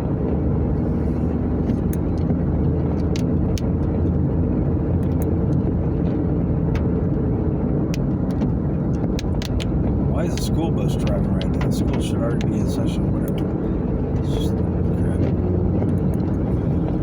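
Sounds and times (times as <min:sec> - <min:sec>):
road noise: 0:00.0 - 0:17.0
vehicle engine drone: 0:00.0 - 0:17.0.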